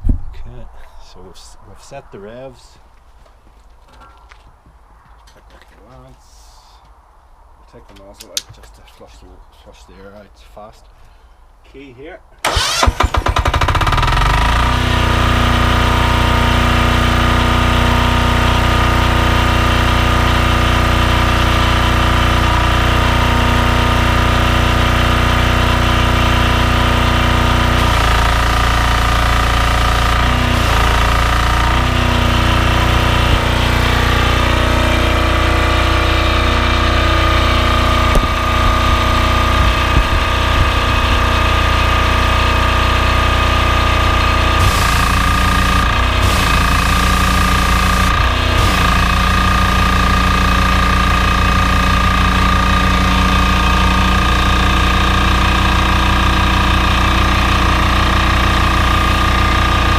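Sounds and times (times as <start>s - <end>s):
diesel engine running: 12.4s - 59.9s.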